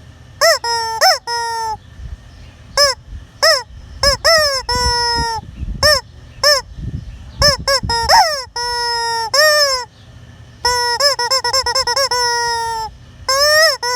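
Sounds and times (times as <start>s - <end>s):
chicken squawking: 0.4s - 1.8s, 2.8s - 6.7s, 7.4s - 9.9s, 10.6s - 13.9s.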